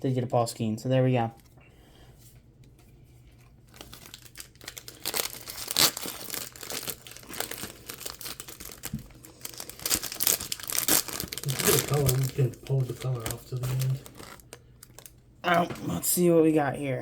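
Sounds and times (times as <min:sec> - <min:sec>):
foil wrapper tearing and crinkling: 0:03.6 - 0:15.2.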